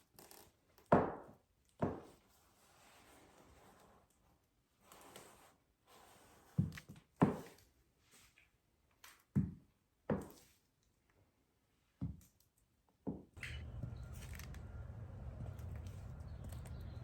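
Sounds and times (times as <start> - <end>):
soft rustle of movement: 13.4 - 17.0.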